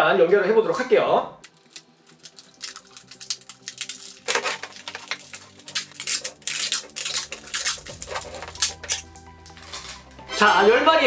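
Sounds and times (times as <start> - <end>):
adhesive tape crackling off roll: 1.4 - 10.2.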